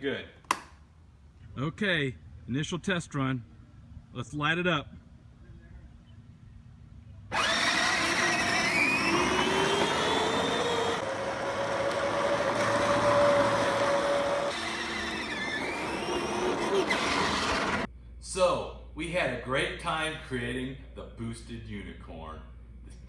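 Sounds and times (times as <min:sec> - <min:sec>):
toy car electric motor whining: 0:07.3 - 0:17.9.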